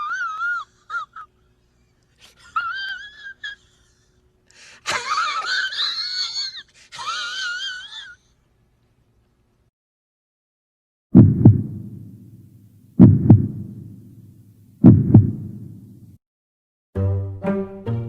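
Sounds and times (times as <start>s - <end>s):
high-pitched squeaky wheezing laugh: 0.0s - 4.2s, 4.8s - 8.4s.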